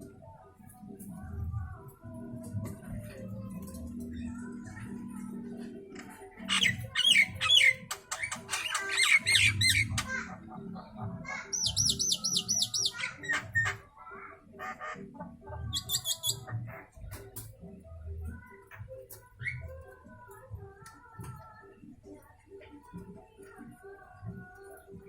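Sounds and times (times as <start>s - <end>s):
starling squawking and singing: 6.4s - 13.9s, 14.5s - 17.0s.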